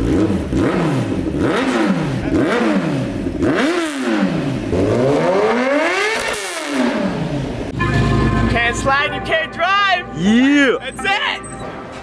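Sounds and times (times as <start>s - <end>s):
motorcycle engine revving: 0.0s - 7.7s.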